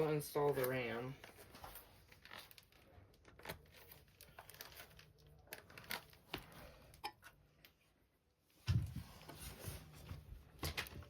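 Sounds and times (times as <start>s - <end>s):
plastic packaging crinkling: 0.5s - 6.7s.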